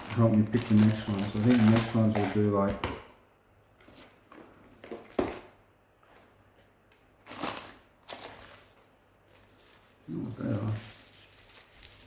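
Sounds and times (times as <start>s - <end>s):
plastic packaging rustling: 0.0s - 2.9s, 7.2s - 12.0s.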